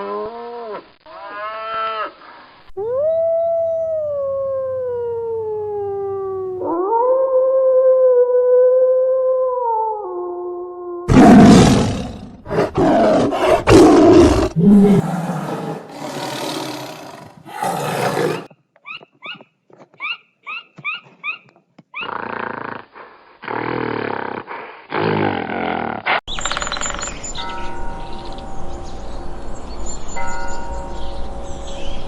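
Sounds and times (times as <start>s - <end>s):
wild animal roars: 11.1s - 18.5s.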